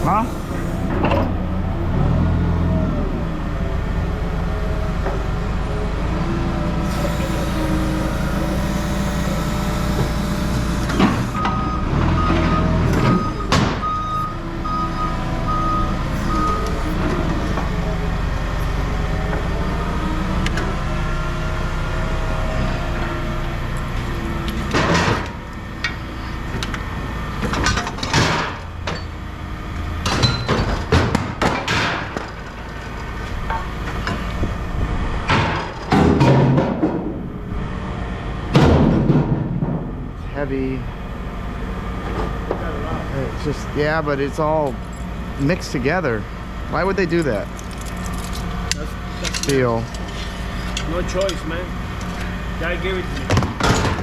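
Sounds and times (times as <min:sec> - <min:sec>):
reversing alarm beeping: 0:00.0 - 0:01.2, 0:06.7 - 0:18.8
heavy vehicle engine running: 0:00.0 - 0:54.0
metallic clanks and bangs: 0:27.4 - 0:29.1, 0:30.0 - 0:32.8, 0:35.2 - 0:37.3, 0:38.5 - 0:40.2.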